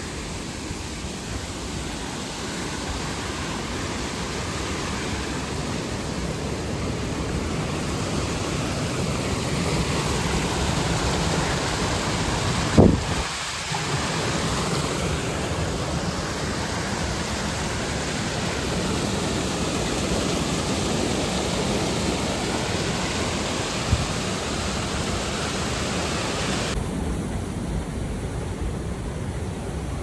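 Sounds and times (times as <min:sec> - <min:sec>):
waterfall roaring: 0:00.0 - 0:30.0.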